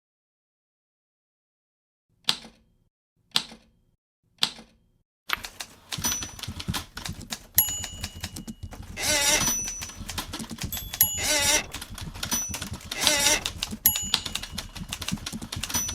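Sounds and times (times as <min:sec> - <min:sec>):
fast typewriter typing clatter: 0:05.3 - 0:15.9
typewriter keystrokes: 0:05.3 - 0:15.9
typewriter bell ding: 0:05.4 - 0:15.9
typewriter carriage rasp: 0:05.4 - 0:15.9.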